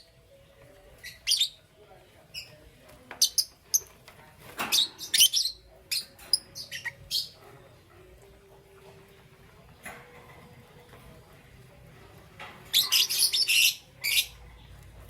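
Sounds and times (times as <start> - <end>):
lovebirds chirping: 4.6 - 7.4, 12.6 - 15.0.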